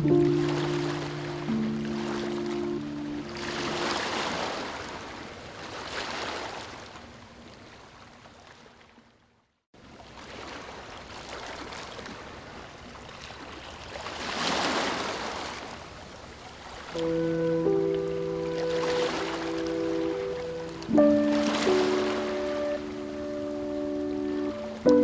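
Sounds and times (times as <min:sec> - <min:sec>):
held music chords: 0:00.0 - 0:04.0, 0:17.0 - 0:25.0
ocean waves washing in: 0:00.0 - 0:06.9, 0:14.0 - 0:25.0.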